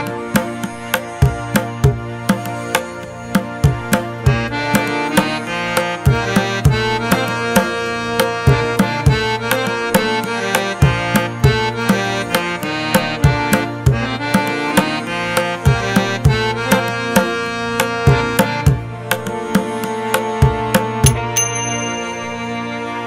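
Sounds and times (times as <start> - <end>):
percussion beat: 0.0 - 22.8
sustained melodic notes: 21.0 - 23.0.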